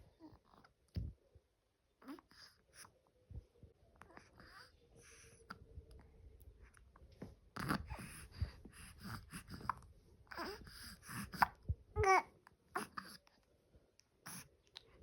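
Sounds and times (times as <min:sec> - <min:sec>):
baby babbling: 0:10.3 - 0:13.2.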